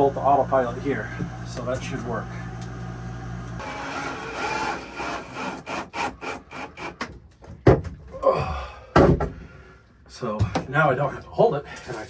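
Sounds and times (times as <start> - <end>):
power driver whining: 0.0 - 7.0.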